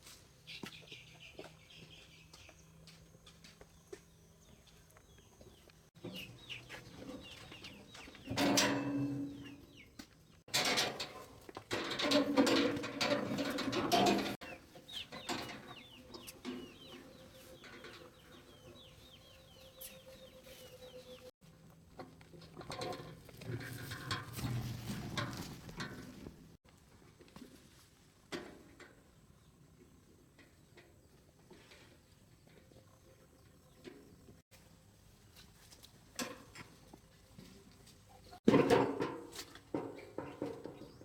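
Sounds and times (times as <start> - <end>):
chickens clucking: 6.0 - 10.0, 12.2 - 21.3.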